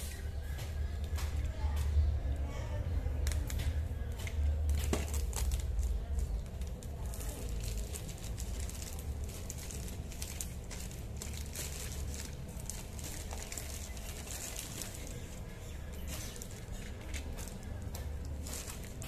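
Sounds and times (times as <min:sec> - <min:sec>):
steady low hum: 0:00.0 - 0:19.0
packaging rustling and crinkling: 0:04.6 - 0:19.0.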